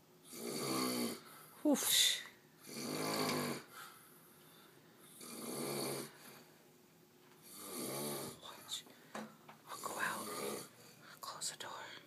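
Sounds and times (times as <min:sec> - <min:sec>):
man snoring: 0:00.3 - 0:01.3, 0:02.6 - 0:03.7, 0:05.1 - 0:06.3, 0:07.4 - 0:08.4, 0:09.8 - 0:10.7.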